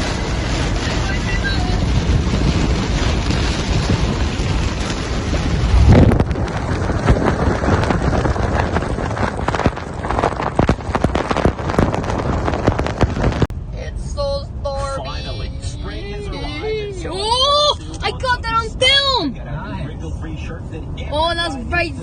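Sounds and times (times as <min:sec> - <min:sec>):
heavy rain and wind on vehicle: 0:00.0 - 0:22.0
loud low thump: 0:04.9 - 0:13.5.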